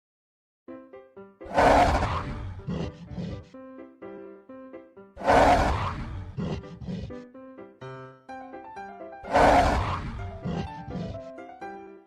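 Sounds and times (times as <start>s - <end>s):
big cat roar sound effect: 1.5s - 3.6s, 5.2s - 7.2s, 9.3s - 11.3s.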